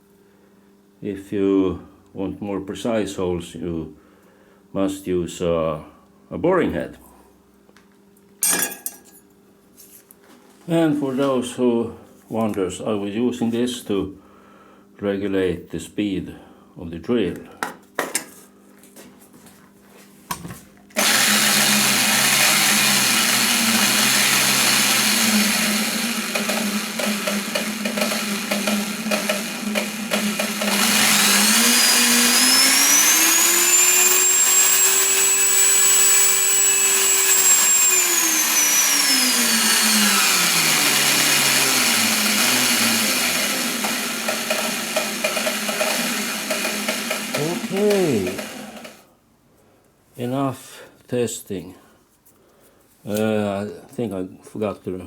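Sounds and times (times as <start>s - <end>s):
electric drill motor whining: 21.0s - 49.0s.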